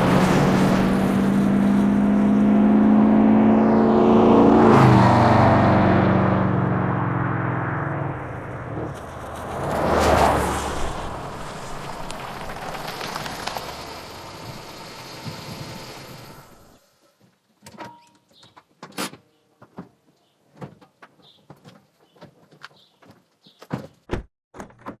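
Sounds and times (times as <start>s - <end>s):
dense car noise: 0.0s - 17.0s.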